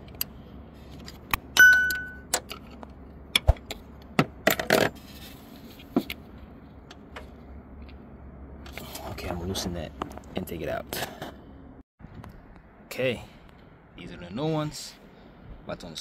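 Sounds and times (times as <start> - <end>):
wrench clinking on metal: 1.6 - 2.3.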